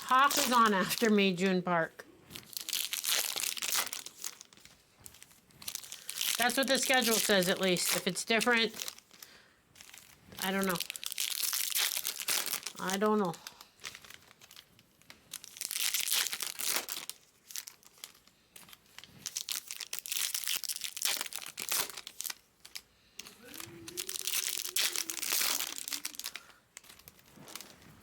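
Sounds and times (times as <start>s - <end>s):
plastic wrapping crinkling and tearing: 0.0s - 1.5s, 2.2s - 28.0s.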